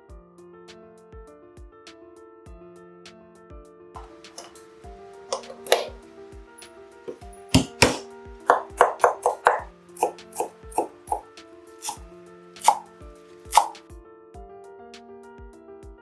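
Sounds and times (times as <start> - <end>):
knife chopping food: 4.0 - 4.6, 5.3 - 6.0, 7.1 - 12.0, 12.6 - 12.9, 13.5 - 13.8
background music: 4.0 - 16.0.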